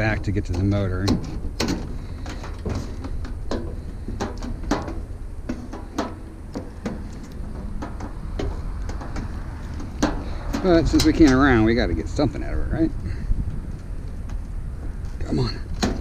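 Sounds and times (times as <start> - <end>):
steady low rumble: 0.0 - 16.0
hands clicking and knocking on metal parts: 0.4 - 11.6.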